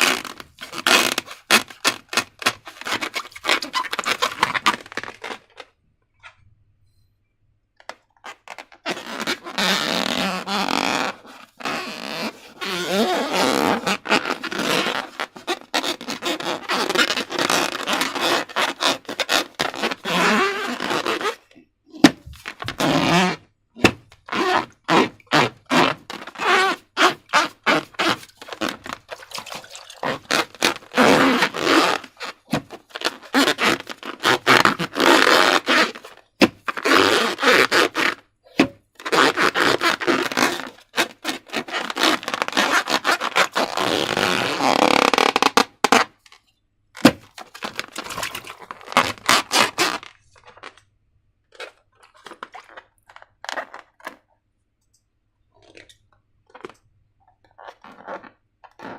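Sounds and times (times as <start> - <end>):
slime squelching by hand: 23.8 - 34.9, 47.0 - 50.8, 51.5 - 54.3.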